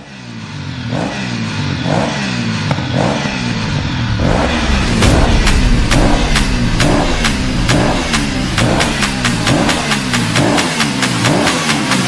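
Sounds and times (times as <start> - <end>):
sharp percussive hits: 3.0 - 12.0.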